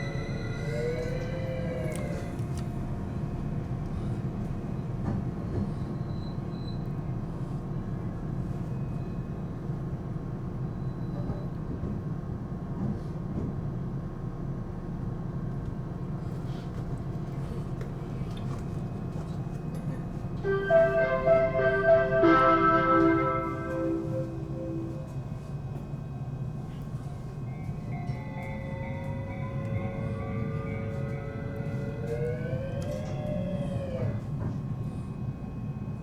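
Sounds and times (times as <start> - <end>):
train wheels rumbling on rail: 0.0 - 22.1.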